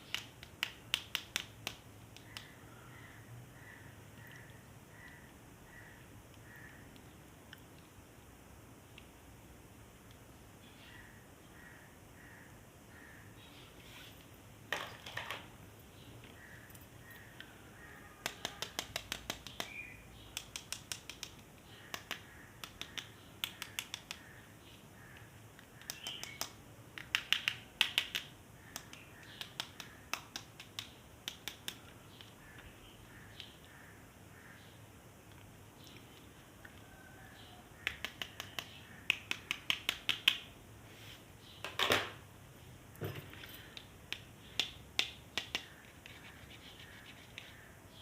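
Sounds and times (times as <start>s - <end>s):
plastic toys clicking: 18.2s - 19.8s, 20.4s - 24.2s, 25.6s - 32.4s.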